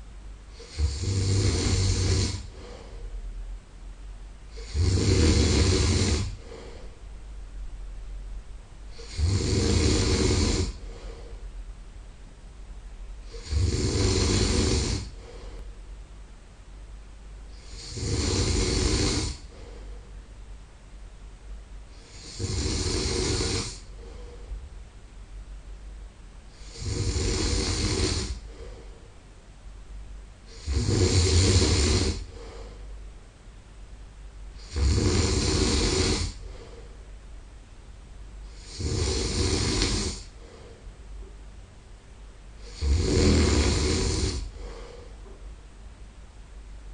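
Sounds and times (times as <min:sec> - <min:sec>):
quiet breathing: 0:00.0 - 0:12.1, 0:13.1 - 0:16.3, 0:17.0 - 0:20.7, 0:21.3 - 0:25.8, 0:26.4 - 0:33.2, 0:34.4 - 0:37.4, 0:38.3 - 0:41.5, 0:42.5 - 0:45.7
man snoring: 0:00.5 - 0:03.0, 0:04.5 - 0:06.9, 0:08.9 - 0:11.4, 0:13.2 - 0:15.7, 0:17.5 - 0:19.8, 0:21.9 - 0:24.4, 0:26.5 - 0:28.9, 0:30.5 - 0:32.8, 0:34.6 - 0:36.8, 0:38.4 - 0:40.6, 0:42.6 - 0:45.0.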